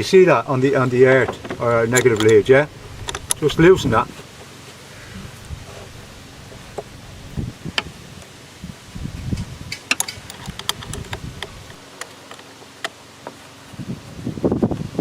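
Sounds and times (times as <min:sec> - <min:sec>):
spanner clicking on a nut: 0:01.9 - 0:03.5, 0:09.3 - 0:12.5.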